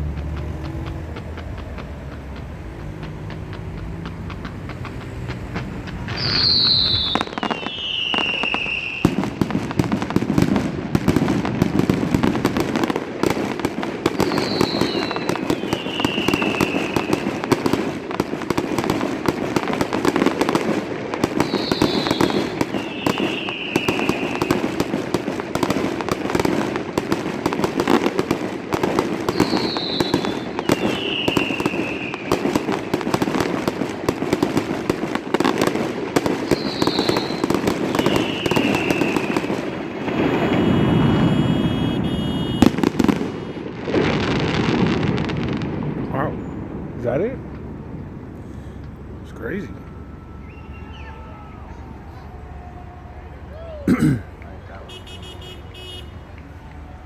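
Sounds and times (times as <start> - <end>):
fireworks bangs and crackling: 0.0 - 57.0
high falling firework whistles: 5.9 - 13.0, 14.0 - 28.3, 29.0 - 45.8, 48.7 - 53.8.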